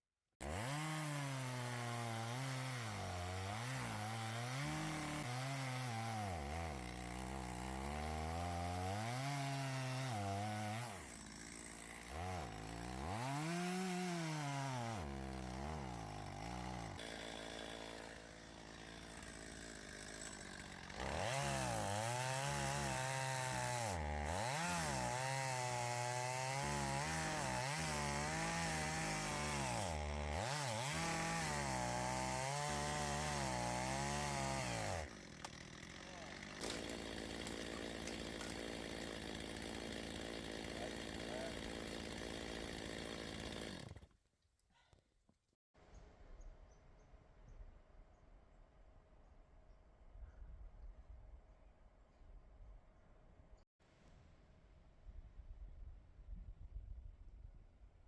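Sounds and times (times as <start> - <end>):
chainsaw cutting wood: 0.4 - 44.2.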